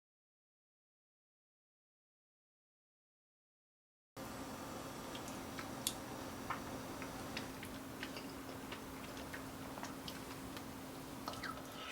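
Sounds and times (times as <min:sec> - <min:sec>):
steady low hum: 0:04.2 - 0:11.9.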